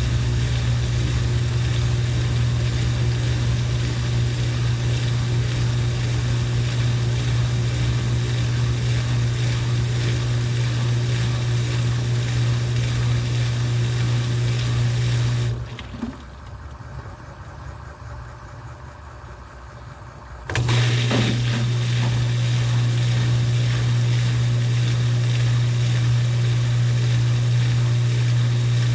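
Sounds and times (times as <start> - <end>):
noisy rattle: 0.0 - 13.6
washing machine spinning: 0.0 - 28.9.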